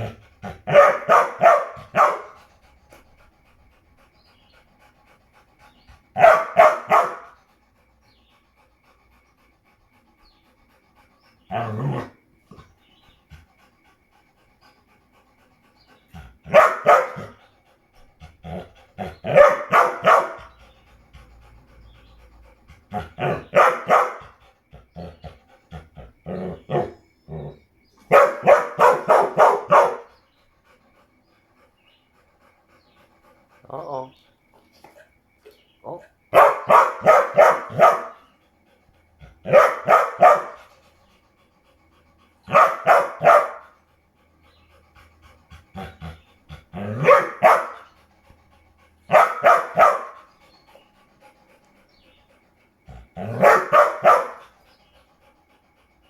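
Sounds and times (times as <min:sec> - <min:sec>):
dog barking: 0:00.0 - 0:02.4, 0:06.2 - 0:07.4, 0:16.5 - 0:17.4, 0:19.0 - 0:20.5, 0:23.0 - 0:24.4, 0:28.1 - 0:30.1, 0:35.9 - 0:38.2, 0:39.4 - 0:40.6, 0:42.5 - 0:43.8, 0:46.8 - 0:47.9, 0:49.1 - 0:50.3, 0:53.2 - 0:54.5.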